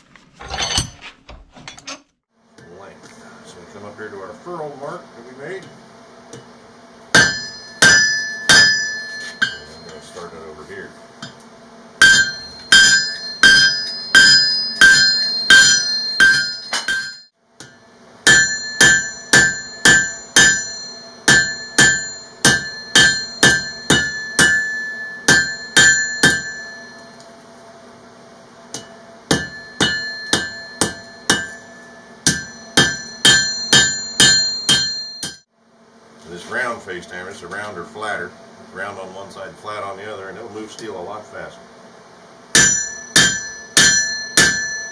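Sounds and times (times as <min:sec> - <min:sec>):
hammer striking steel on anvil: 0:07.1 - 0:10.3, 0:11.2 - 0:27.2, 0:28.7 - 0:35.5, 0:42.5 - 0:44.9.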